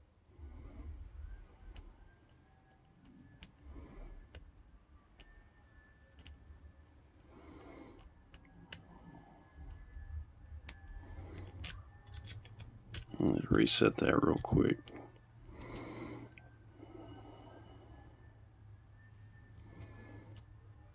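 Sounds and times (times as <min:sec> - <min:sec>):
lock pick clicking in padlock: 0:06.0 - 0:15.8.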